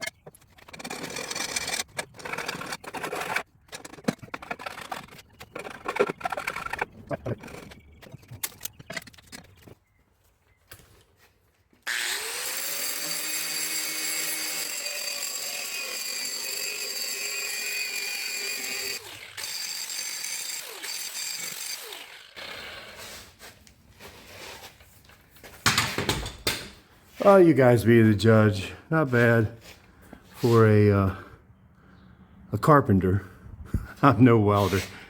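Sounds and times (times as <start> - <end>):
electric sander on steel: 11.9 - 23.4.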